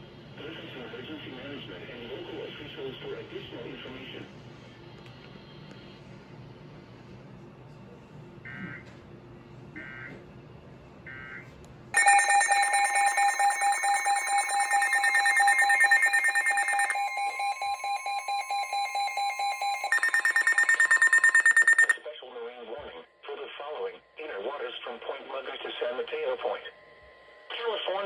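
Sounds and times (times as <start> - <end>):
two-tone alarm: 12.0 - 22.0.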